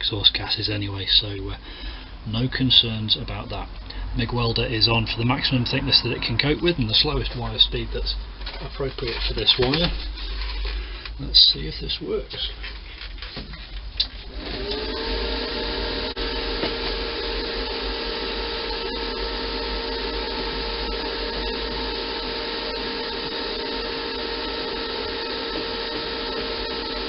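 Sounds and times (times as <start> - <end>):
welder arc buzzing: 14.0 - 27.0.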